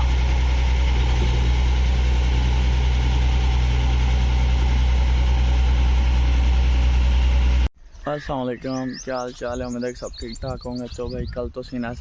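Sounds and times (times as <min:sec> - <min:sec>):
large engine idling: 0:00.0 - 0:07.7.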